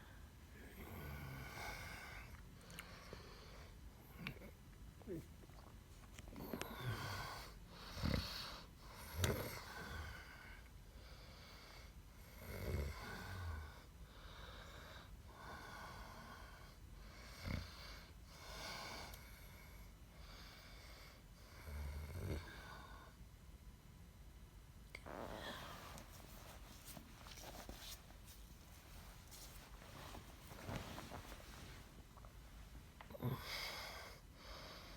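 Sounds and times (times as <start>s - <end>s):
person snoring: 25.0s - 26.1s, 33.1s - 34.2s.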